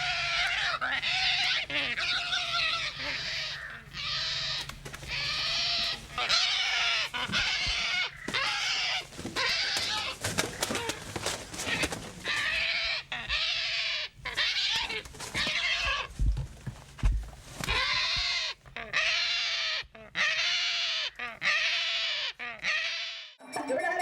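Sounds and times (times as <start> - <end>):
squealing animal calls: 0.0 - 16.1, 17.7 - 23.4.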